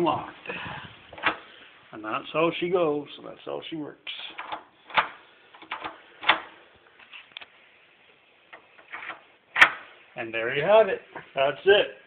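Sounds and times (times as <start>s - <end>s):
door lock clicks and knocks: 4.4s - 6.5s.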